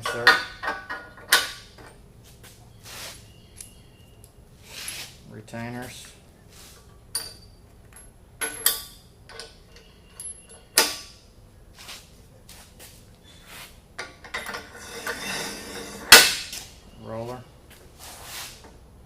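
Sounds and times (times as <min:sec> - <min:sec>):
scraping and rustling: 0:14.5 - 0:18.8.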